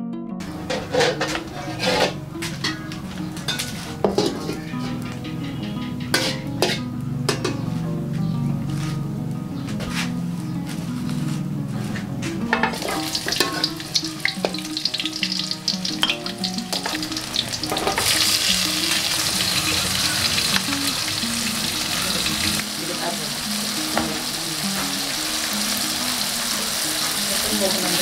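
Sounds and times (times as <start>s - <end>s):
faint simple melody: 0.0s - 28.0s
utensil clinking: 12.6s - 14.7s
food sizzling in a pan: 12.7s - 28.0s.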